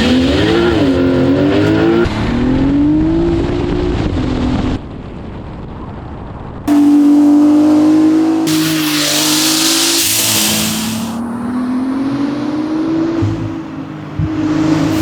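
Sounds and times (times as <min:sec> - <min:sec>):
car engine accelerating: 0:06.7 - 0:15.0
turbo hiss: 0:08.5 - 0:11.2.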